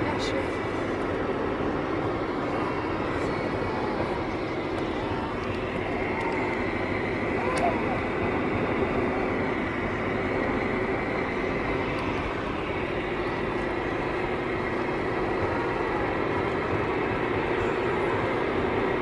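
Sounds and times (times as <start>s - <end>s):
road and engine noise in car: 0.0s - 19.0s.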